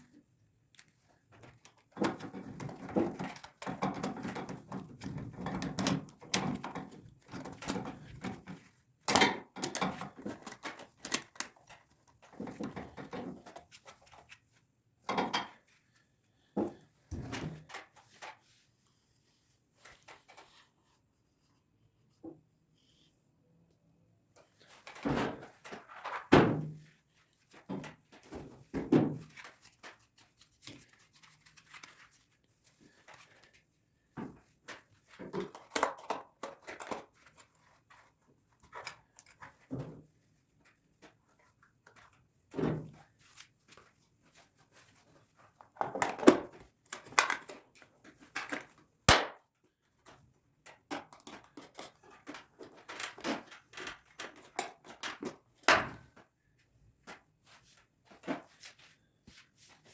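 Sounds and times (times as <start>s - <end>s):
tools handled at a workbench: 0.8s - 15.8s, 24.4s - 48.9s, 49.9s - 56.4s.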